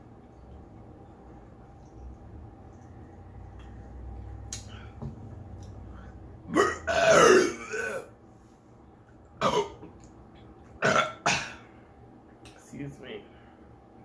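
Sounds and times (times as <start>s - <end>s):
person burping: 6.5s - 8.1s, 9.4s - 9.9s, 10.8s - 11.6s.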